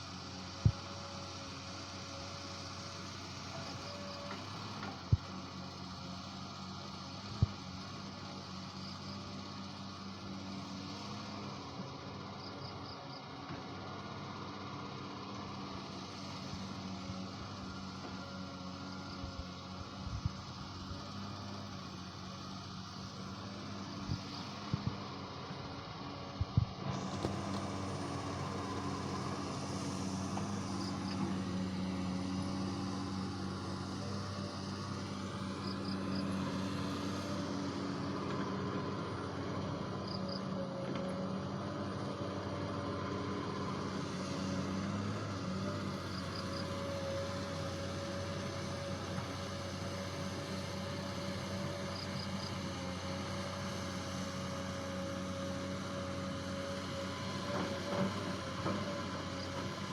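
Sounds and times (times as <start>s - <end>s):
excavator diesel engine running: 0.0s - 59.9s
thin steady whine: 15.3s - 40.7s.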